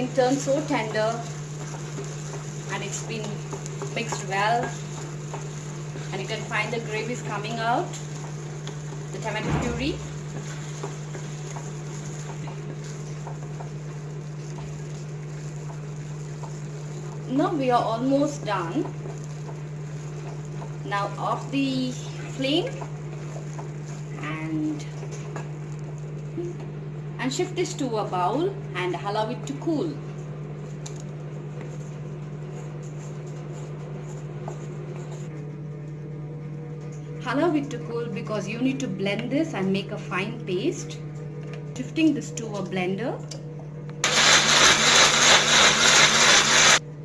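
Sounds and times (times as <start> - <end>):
steady low hum: 0.0 - 47.0
sauce simmering with pops: 0.6 - 6.1, 7.3 - 9.2, 10.1 - 17.3, 18.8 - 20.8.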